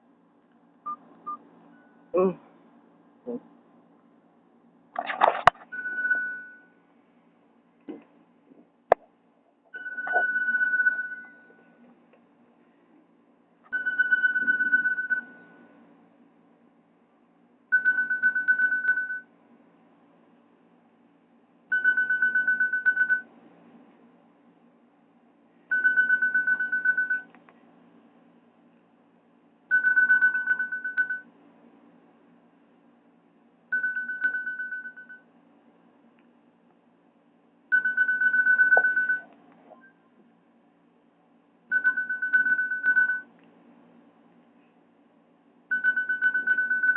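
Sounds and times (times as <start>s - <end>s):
high fluttering phone ringtone: 5.7s - 6.8s, 9.7s - 11.8s, 13.7s - 15.8s, 17.7s - 19.3s, 21.7s - 23.3s, 25.7s - 27.3s, 29.7s - 31.3s, 33.7s - 35.3s, 37.7s - 40.0s, 41.7s - 43.3s, 45.7s - 46.9s.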